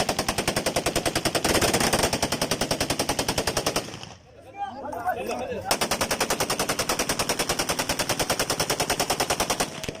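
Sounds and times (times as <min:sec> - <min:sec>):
automatic rifle fire: 0:00.0 - 0:04.1
voices: 0:04.2 - 0:05.8.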